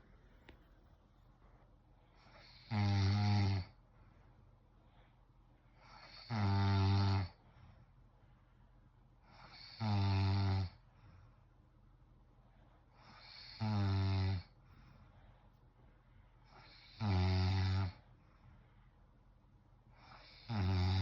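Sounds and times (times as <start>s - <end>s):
person snoring: 16.5s - 18.0s, 20.1s - 21.0s.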